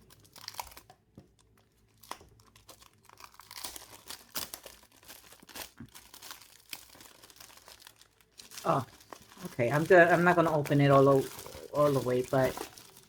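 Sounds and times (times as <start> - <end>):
packaging crinkling and tearing: 0.0 - 13.0.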